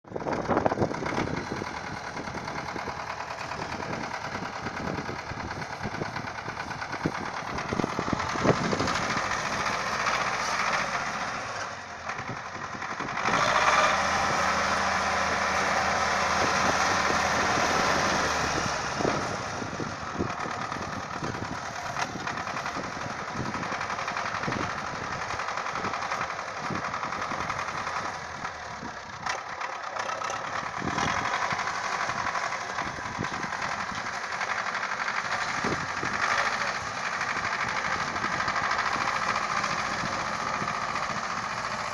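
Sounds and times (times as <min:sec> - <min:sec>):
engine running: 0:00.1 - 0:41.9.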